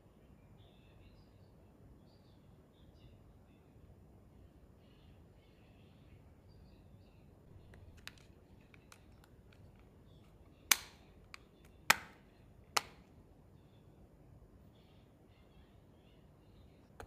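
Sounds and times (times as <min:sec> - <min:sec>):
sharp plastic clicks: 0:07.6 - 0:09.9, 0:10.7 - 0:13.1.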